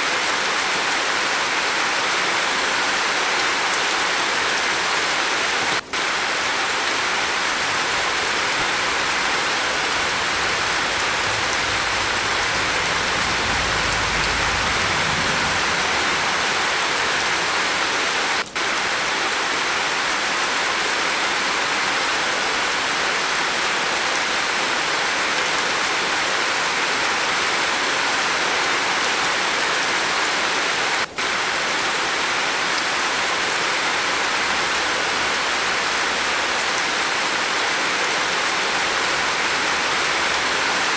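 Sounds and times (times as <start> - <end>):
rain on a roof: 0.0 - 40.9
faint low rumble: 7.6 - 18.0.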